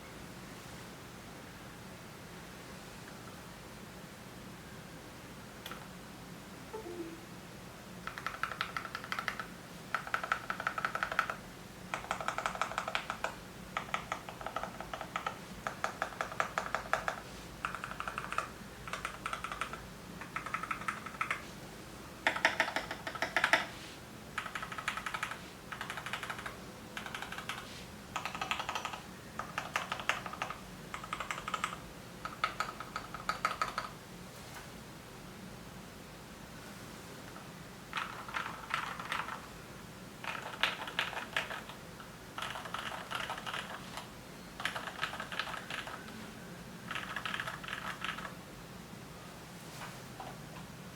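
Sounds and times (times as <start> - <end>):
mechanical keyboard typing: 8.0 - 21.4, 22.2 - 23.7, 24.4 - 27.6, 28.2 - 33.9, 37.9 - 39.5, 40.2 - 46.1, 46.9 - 48.4.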